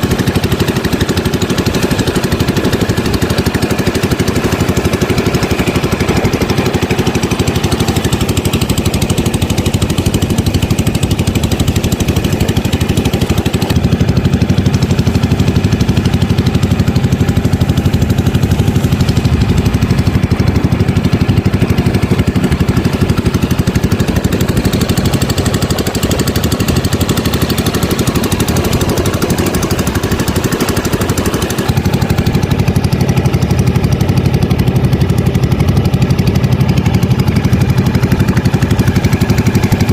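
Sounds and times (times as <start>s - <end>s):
small engine running: 0.0s - 39.9s.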